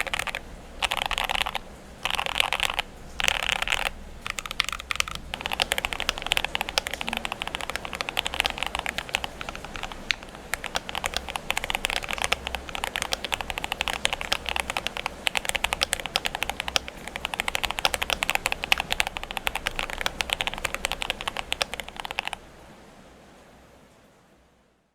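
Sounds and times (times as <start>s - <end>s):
fast typing on mechanical keyboard: 0.0s - 22.4s.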